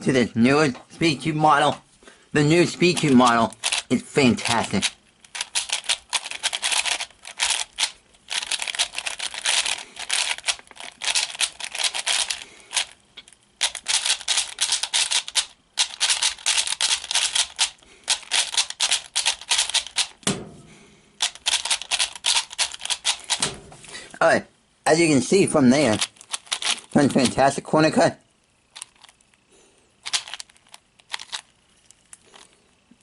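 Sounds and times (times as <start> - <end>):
puzzle cube plastic clicking: 2.8 - 20.2, 21.2 - 23.5, 25.8 - 27.4, 28.7 - 29.3, 30.0 - 32.5.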